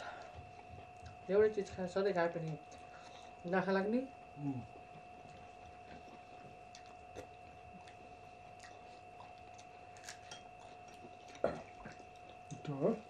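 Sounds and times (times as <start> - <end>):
high background whine: 0.0 - 13.0
chewing food: 0.2 - 1.8, 4.8 - 13.0.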